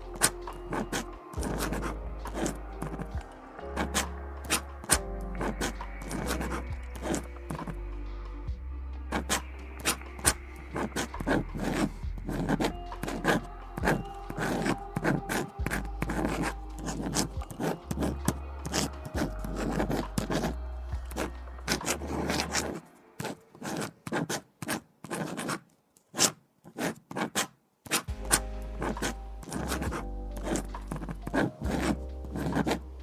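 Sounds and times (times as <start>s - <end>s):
pen scratching on paper: 0.0s - 7.9s, 9.1s - 33.0s
lo-fi background music: 0.0s - 24.3s, 28.1s - 33.0s.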